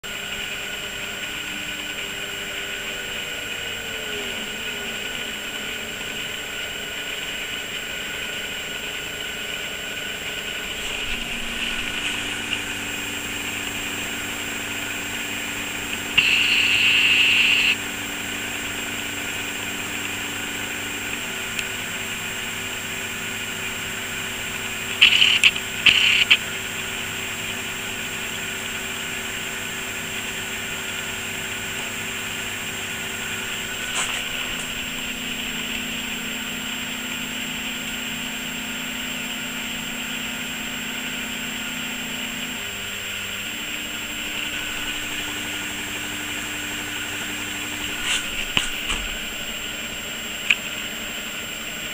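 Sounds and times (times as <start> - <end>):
machine motors whining: 9.7 - 37.5, 42.2 - 51.2
hissing bursts: 16.0 - 17.8, 24.9 - 26.4.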